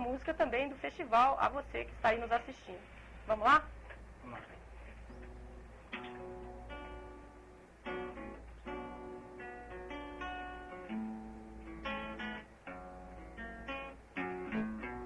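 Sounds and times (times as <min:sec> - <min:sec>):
acoustic guitar strumming chords: 0:05.1 - 0:15.0.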